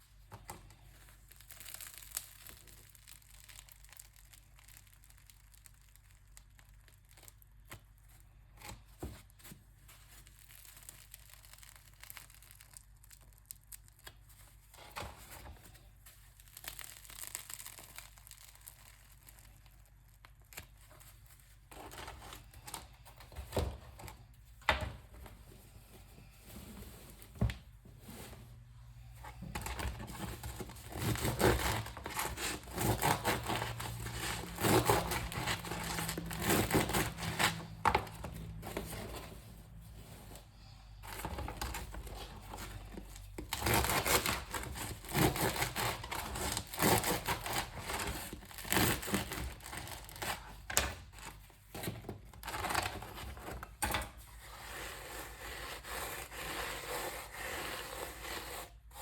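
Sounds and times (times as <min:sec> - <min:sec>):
bread crust crackling: 0:00.0 - 0:24.6, 0:28.5 - 0:53.2.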